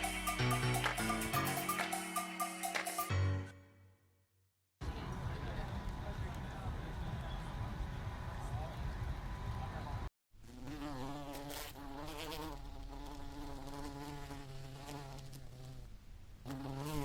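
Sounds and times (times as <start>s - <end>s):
flying insect buzzing: 10.4s - 17.0s.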